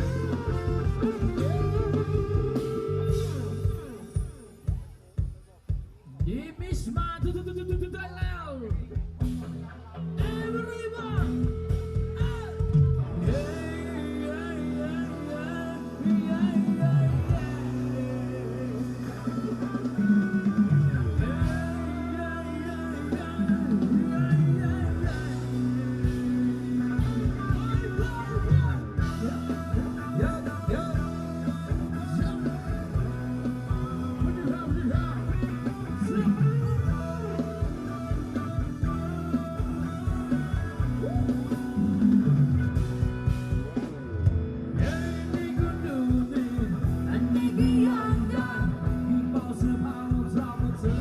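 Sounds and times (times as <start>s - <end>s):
drum beats: 0.0s - 51.0s
guitar: 0.0s - 51.0s
person singing: 10.2s - 42.5s, 44.8s - 51.0s.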